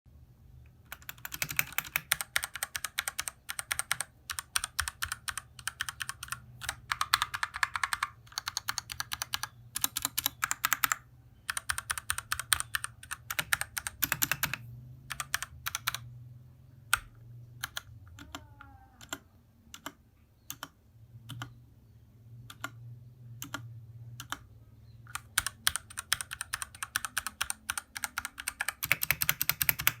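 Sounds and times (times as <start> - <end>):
mechanical keyboard typing: 0.8 - 16.1, 16.9 - 21.6, 22.4 - 22.8, 23.4 - 24.5, 25.1 - 30.0.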